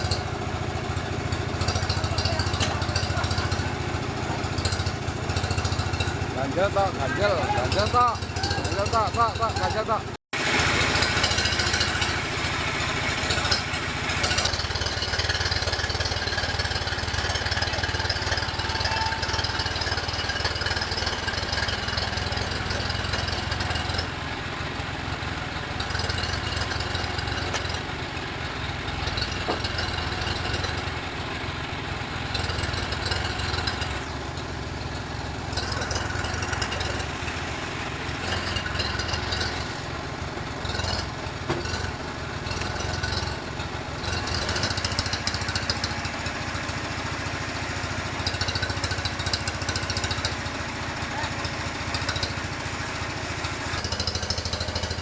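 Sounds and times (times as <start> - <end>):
sawmill machinery drone: 0.0 - 55.0.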